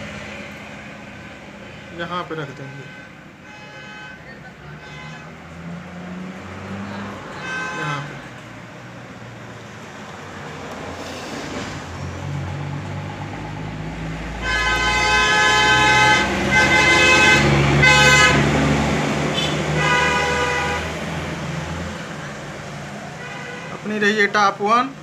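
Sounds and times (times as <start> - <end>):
vehicle horn blasts: 1.7 - 5.4, 7.3 - 8.2, 14.4 - 18.6, 19.3 - 21.0, 23.2 - 23.8
vehicle engine rumbling past: 4.6 - 19.8.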